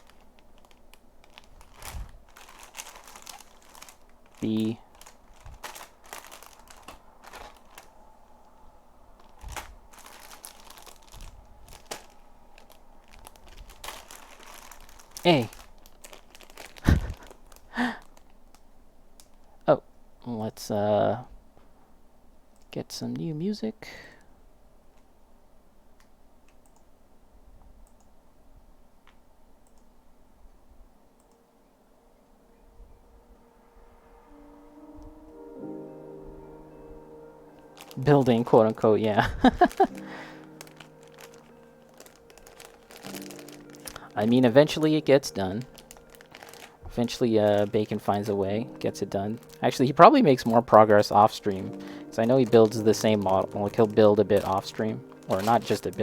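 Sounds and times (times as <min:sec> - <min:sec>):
plastic bags crinkling: 0:00.0 - 0:19.6, 0:37.5 - 0:56.0
low steady hum: 0:00.0 - 0:56.0.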